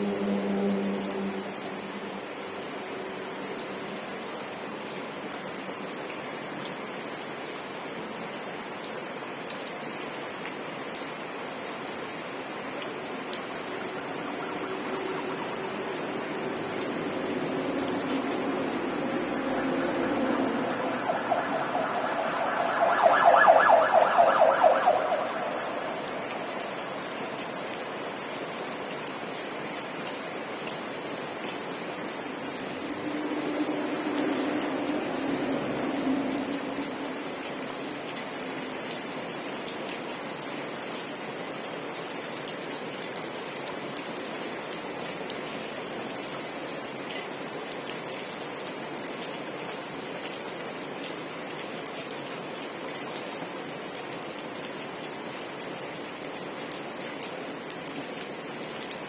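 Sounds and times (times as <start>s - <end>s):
vehicle passing by: 0.0s - 2.4s, 13.1s - 28.0s, 32.2s - 37.9s
steady rain falling: 0.0s - 59.0s.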